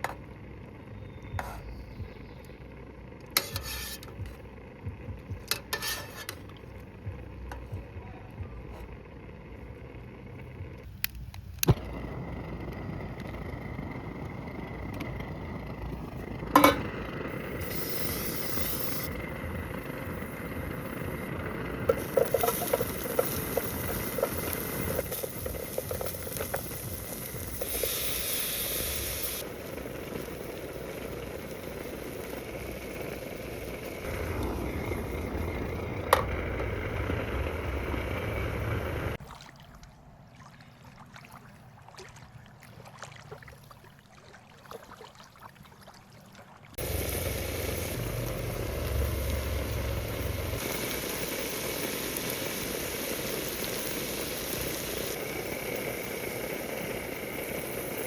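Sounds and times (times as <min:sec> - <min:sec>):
food sizzling in a pan: 0:21.9 - 0:29.5, 0:46.8 - 0:58.0.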